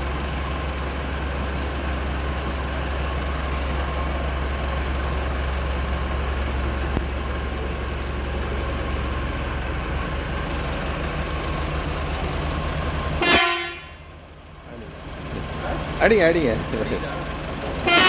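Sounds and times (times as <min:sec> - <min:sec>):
diesel engine idling: 0:00.0 - 0:18.0
air horn blast: 0:13.2 - 0:14.1.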